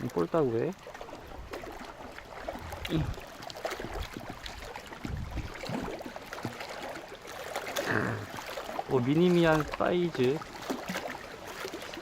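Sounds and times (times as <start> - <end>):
small waves lapping: 0.0 - 12.0
wind buffeting microphone: 2.4 - 6.0.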